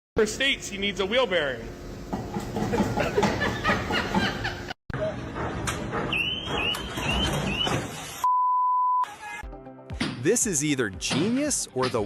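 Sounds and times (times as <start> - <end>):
electronic beep tone: 7.6 - 9.1.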